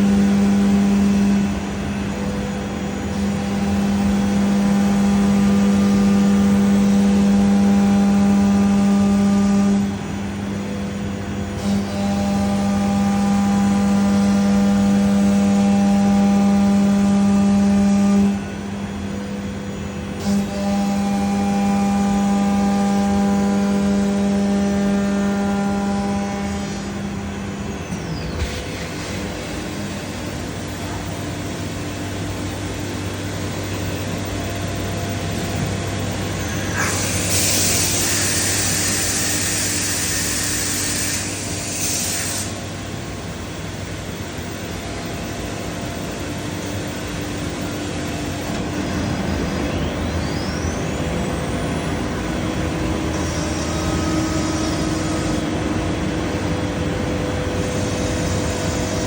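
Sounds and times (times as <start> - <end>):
router spindle high whine: 0.0 - 59.0
steady machine hum: 0.0 - 59.0
loud air hiss: 36.2 - 42.9.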